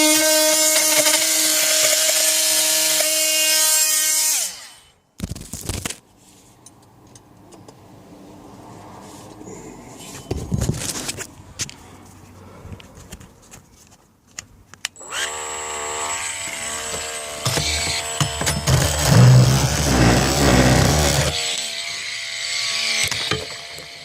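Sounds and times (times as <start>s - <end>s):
power cutting tool whining: 0.0s - 4.9s, 15.0s - 24.0s
scraping: 17.6s - 21.4s.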